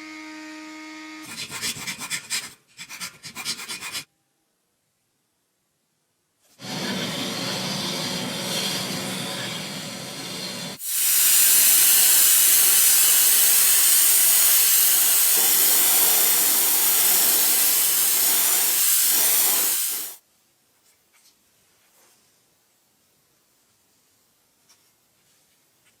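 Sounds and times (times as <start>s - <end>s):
compressed air hissing: 6.6s - 20.2s.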